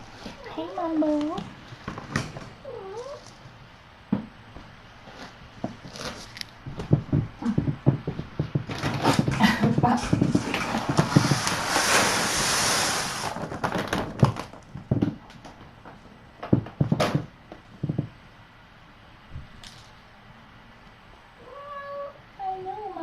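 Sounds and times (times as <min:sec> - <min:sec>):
objects knocking and thudding: 0:05.6 - 0:12.3, 0:13.2 - 0:18.2
rustling hiss: 0:10.3 - 0:13.8.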